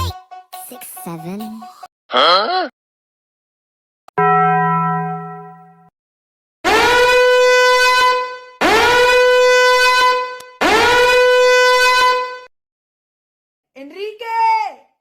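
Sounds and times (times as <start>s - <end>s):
long horn blasts: 6.7s - 12.5s.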